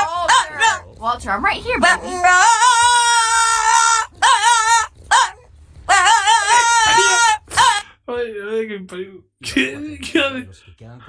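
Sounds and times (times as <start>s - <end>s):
dog howling whines: 0.0s - 0.8s, 1.8s - 7.8s.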